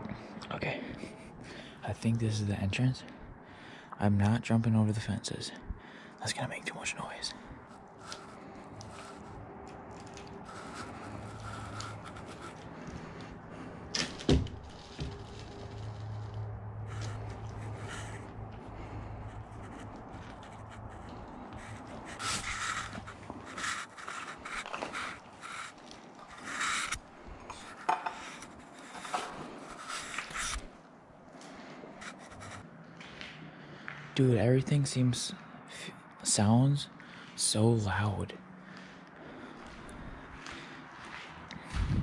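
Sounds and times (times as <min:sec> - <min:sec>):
footsteps rustling and scraping: 0:07.6 - 0:34.0, 0:38.8 - 0:42.0.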